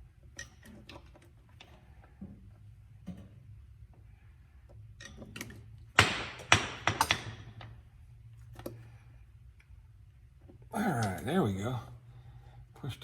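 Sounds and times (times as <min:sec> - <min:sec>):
low steady hum: 0:07.3 - 0:13.0.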